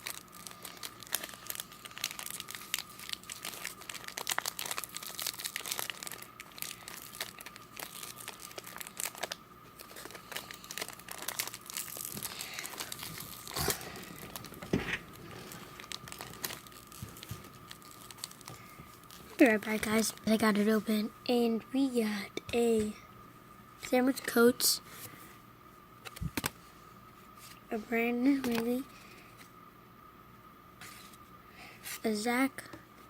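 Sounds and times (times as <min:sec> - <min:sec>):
wrapper crinkling and tearing: 0:00.0 - 0:20.3.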